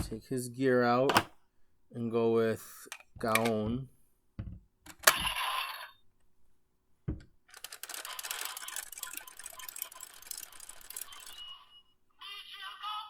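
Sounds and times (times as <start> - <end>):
sharp plastic snap: 1.1 - 1.4
plastic toy clicks and rattling: 7.5 - 11.5.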